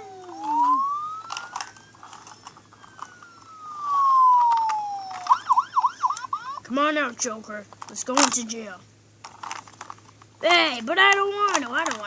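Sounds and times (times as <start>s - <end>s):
toy electronic siren: 0.0s - 6.6s.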